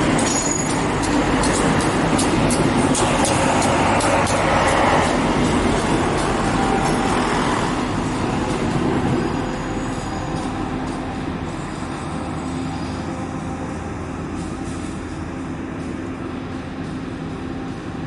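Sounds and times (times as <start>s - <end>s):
train rumbling past: 0.0s - 18.0s.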